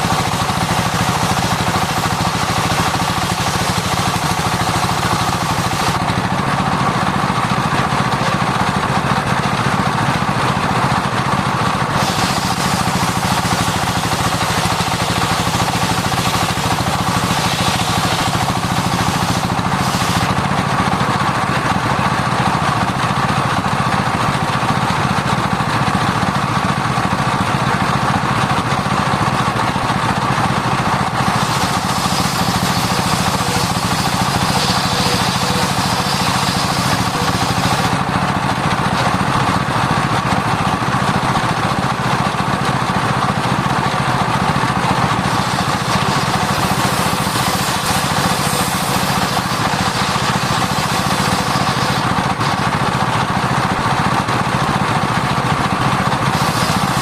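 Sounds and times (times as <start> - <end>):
circular saw sawing wood: 0.0 - 22.4, 25.8 - 57.0
engine running: 0.0 - 57.0.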